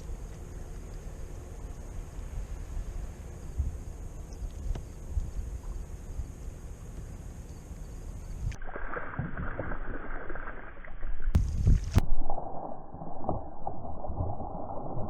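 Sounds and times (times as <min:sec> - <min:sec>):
low rumble: 0:08.4 - 0:15.0.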